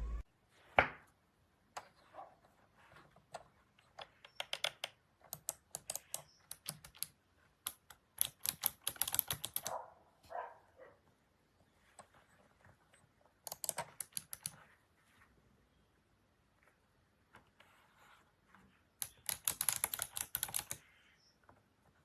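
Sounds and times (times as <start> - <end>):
keypad keys clicking: 3.8 - 9.8, 13.5 - 14.6, 19.0 - 20.8.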